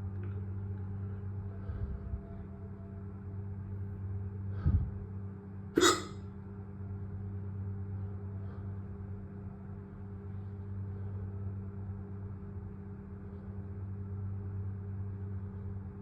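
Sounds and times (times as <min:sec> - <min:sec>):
steady low hum: 0:00.0 - 0:16.0
person hiccuping: 0:05.8 - 0:06.1.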